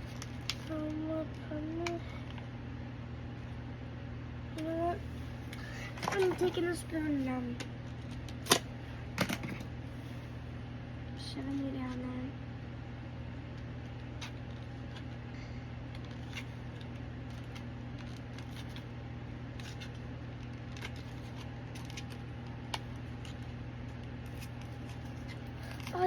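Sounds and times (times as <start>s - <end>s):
steady low hum: 0.0s - 26.0s
small clicks and scrapes: 13.5s - 15.2s, 15.9s - 18.9s, 19.5s - 26.0s.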